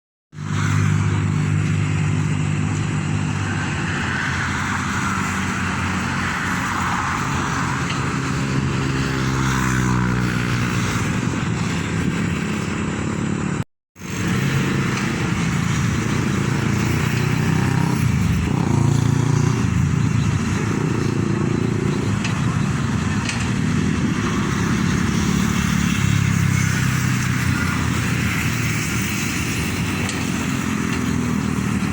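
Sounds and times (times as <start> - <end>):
backhoe engine running under load: 14.1 - 26.2.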